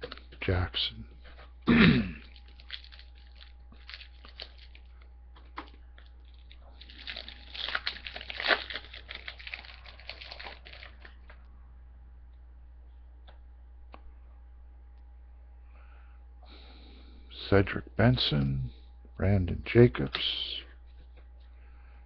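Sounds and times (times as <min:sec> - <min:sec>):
wrapper crinkling and tearing: 0:02.2 - 0:11.4.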